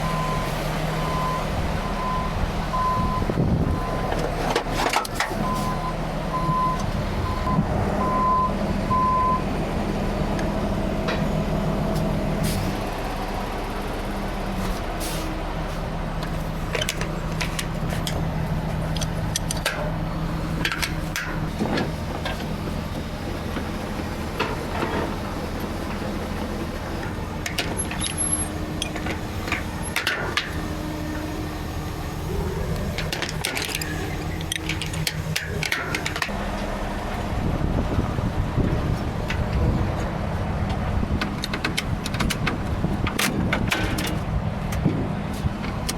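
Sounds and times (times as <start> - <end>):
reversing alarm beeping: 0.0 - 4.2, 5.4 - 9.5
heavy diesel engine running: 0.0 - 45.9
heavy equipment knocks and clanks: 32.8 - 36.4, 38.5 - 45.9.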